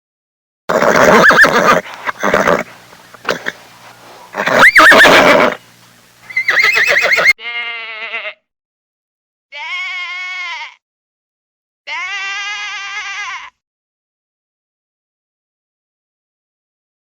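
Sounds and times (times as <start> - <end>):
harsh animal call: 0.7 - 3.6, 4.3 - 5.6, 6.3 - 7.4
wavering bleats: 6.3 - 8.5, 9.5 - 10.8, 11.9 - 13.6.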